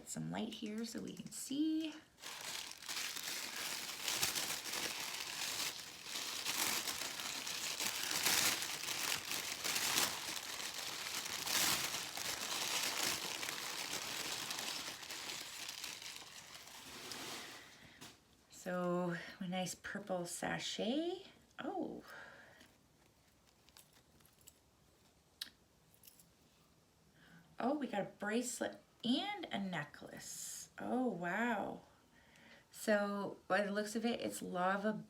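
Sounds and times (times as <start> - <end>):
packaging wrap crinkling: 0.8 - 17.8.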